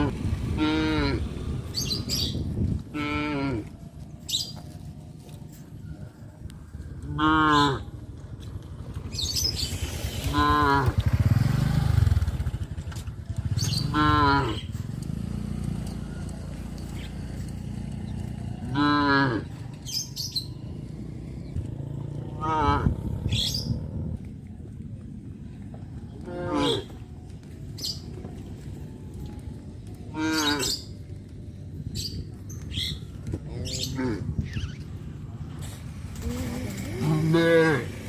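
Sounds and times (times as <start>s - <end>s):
cattle mooing: 0.0s - 1.4s, 2.9s - 3.8s, 7.0s - 8.0s, 10.3s - 11.0s, 13.8s - 14.6s, 18.7s - 19.5s, 22.3s - 23.2s, 26.2s - 26.9s, 36.2s - 38.0s.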